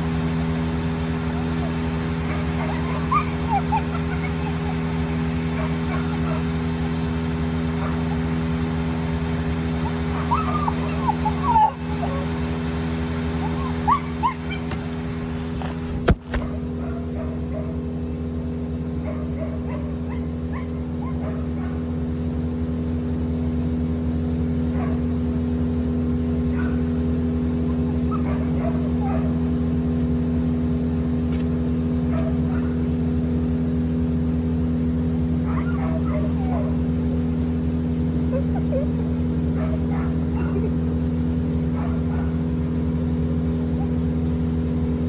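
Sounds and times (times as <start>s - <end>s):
machinery engine drone: 0.0s - 45.0s
dog whimpering: 0.4s - 16.5s, 19.4s - 21.6s, 27.6s - 29.6s, 34.8s - 44.8s.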